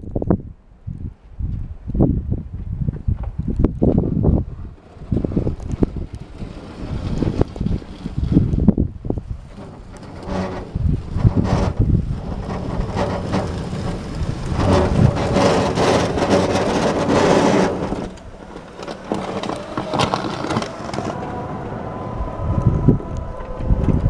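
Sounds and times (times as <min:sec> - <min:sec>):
wind buffeting microphone: 0:00.0 - 0:24.0
plough blade scraping snow: 0:04.7 - 0:24.0
electric tractor pushing snow: 0:04.8 - 0:24.0.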